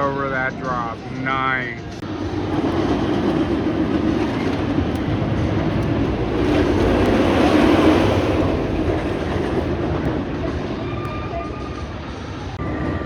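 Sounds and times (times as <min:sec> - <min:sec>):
roller coaster wheels rumbling on track: 0:00.0 - 0:13.0.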